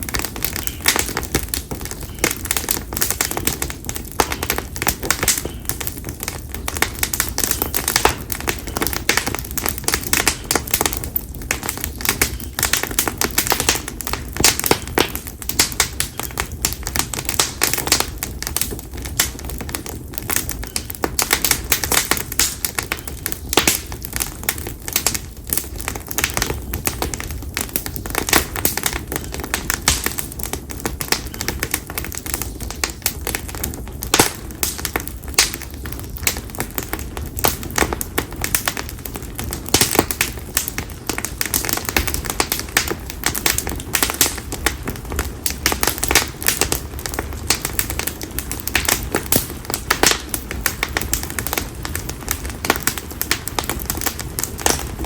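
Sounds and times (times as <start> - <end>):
firewood crackling in fire: 0.0 - 55.0.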